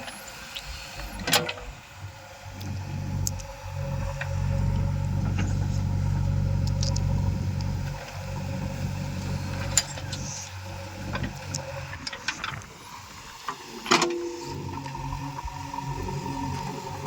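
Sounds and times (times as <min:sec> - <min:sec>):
diesel engine running: 0:01.0 - 0:13.4.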